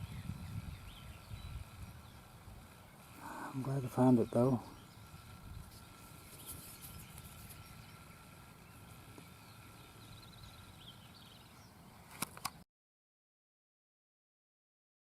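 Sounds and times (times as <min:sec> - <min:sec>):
faint bird chirps: 0:00.0 - 0:11.8.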